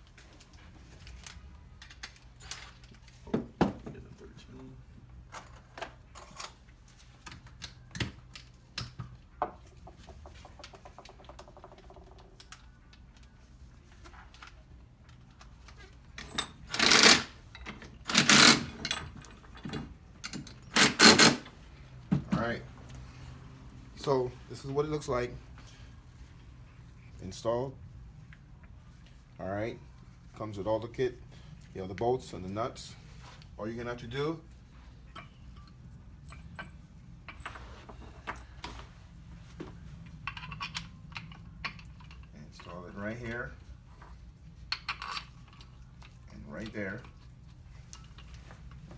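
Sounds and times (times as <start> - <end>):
metal bolts and nuts clicking: 15.1 - 21.5, 40.1 - 42.8, 44.7 - 47.2
ratchet wrench clicking: 16.2 - 17.4, 18.1 - 19.0, 20.3 - 21.5.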